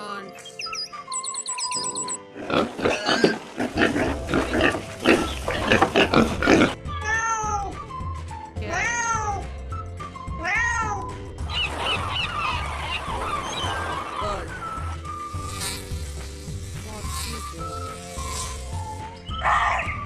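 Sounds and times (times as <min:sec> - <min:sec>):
cat meowing: 0:08.7 - 0:09.4, 0:10.4 - 0:11.1.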